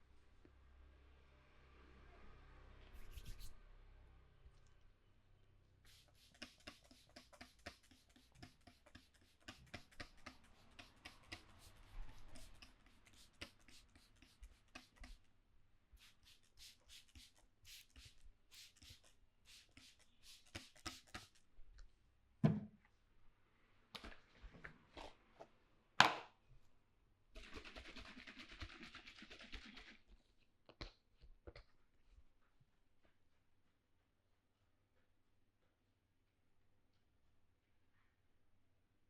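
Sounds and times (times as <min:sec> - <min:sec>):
fingers rubbing hair and scalp: 0:03.0 - 0:03.5, 0:05.9 - 0:15.3, 0:16.0 - 0:21.5.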